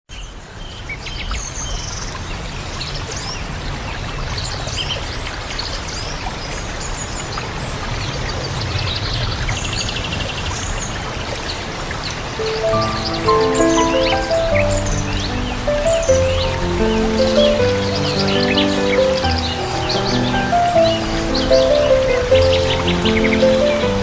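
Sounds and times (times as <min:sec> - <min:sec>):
flowing water: 0:10.1 - 0:24.0
small birds chirping: 0:12.4 - 0:24.0.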